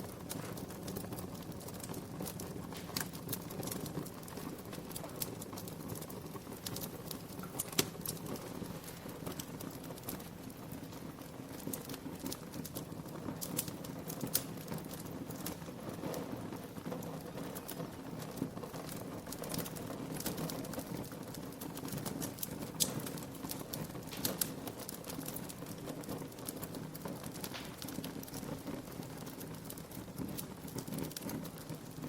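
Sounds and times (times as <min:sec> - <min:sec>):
wood fire crackling and popping: 0:00.0 - 0:32.0.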